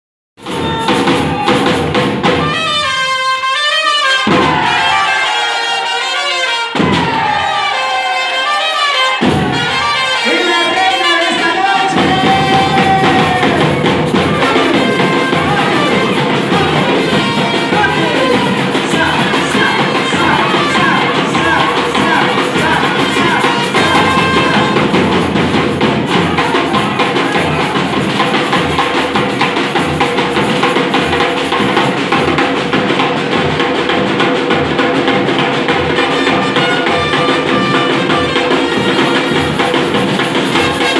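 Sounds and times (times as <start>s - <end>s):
voices over drums: 0.4s - 2.9s, 4.2s - 8.4s, 9.1s - 40.9s
samba drumming: 0.4s - 3.4s, 4.0s - 40.9s
pitched melody: 8.9s - 32.4s.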